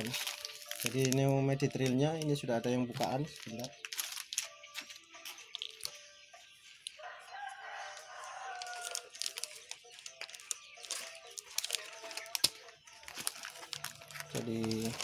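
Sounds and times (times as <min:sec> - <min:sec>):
medicine packet crackling: 0:00.0 - 0:15.0
rooster crowing: 0:07.0 - 0:09.5.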